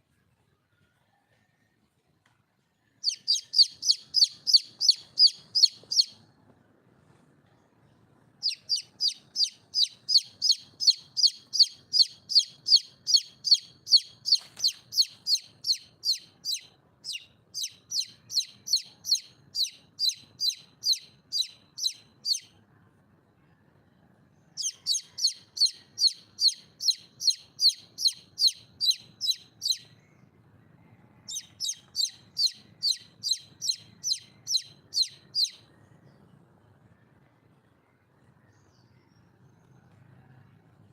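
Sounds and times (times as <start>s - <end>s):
hen calling: 3.0s - 6.2s, 8.4s - 22.4s.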